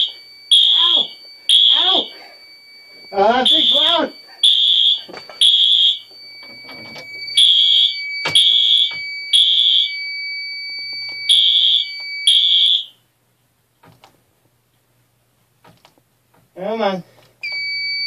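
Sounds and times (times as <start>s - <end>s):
steady high tone: 0.0s - 9.4s
fire alarm blasts: 0.0s - 13.0s, 17.4s - 18.0s.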